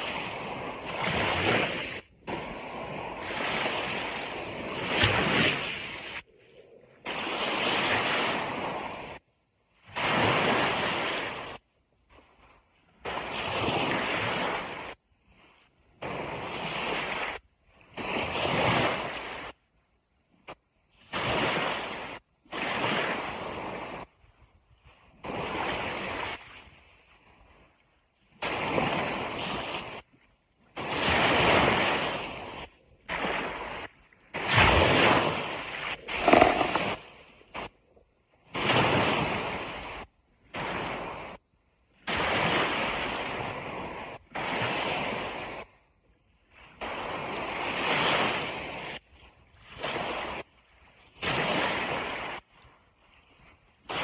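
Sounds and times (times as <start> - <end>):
ocean surf washing on beach: 30.8 - 37.0.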